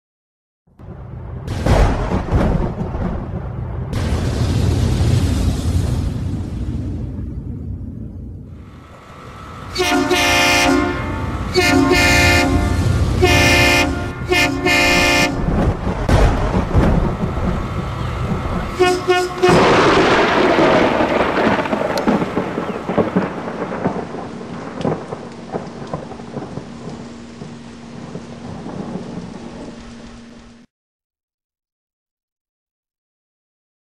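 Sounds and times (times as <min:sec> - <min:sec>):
loud rushing rumbling noise: 0:00.8 - 0:30.7
train horn chord blasts: 0:08.6 - 0:15.6, 0:17.2 - 0:19.9.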